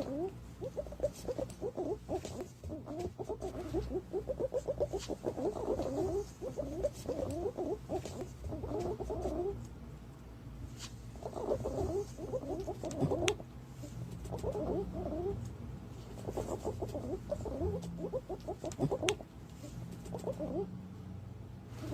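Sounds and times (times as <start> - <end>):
pigeons gurgling calls: 0.0 - 9.6, 11.2 - 13.5, 14.2 - 15.4, 16.2 - 19.3, 20.0 - 20.7.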